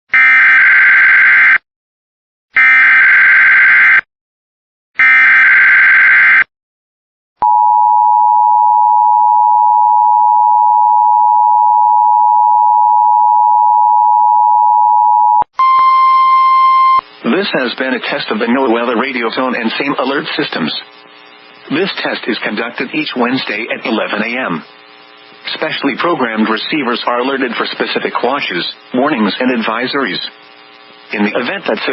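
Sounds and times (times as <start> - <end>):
electronic attention tone: 7.4 - 17.1
buzzy digital data screech: 15.6 - 31.9.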